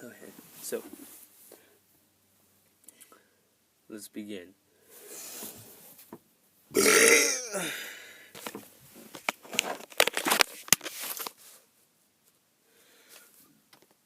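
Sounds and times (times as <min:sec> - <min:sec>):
man burping: 0:06.8 - 0:08.0
breathy noise: 0:06.8 - 0:08.4.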